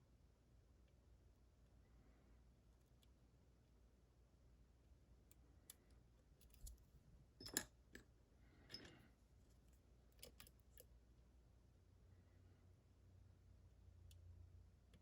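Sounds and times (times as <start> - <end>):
metallic clicks of lock picking: 10.2 - 10.9.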